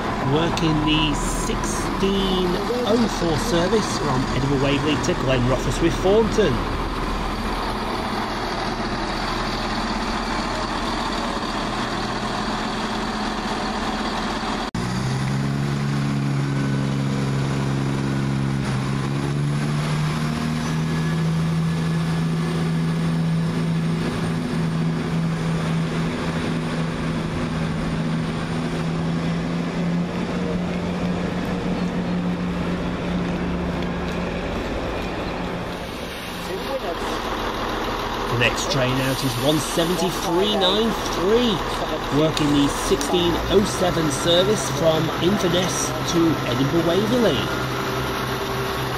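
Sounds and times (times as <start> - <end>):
train diesel engine drone: 0.0 - 48.9.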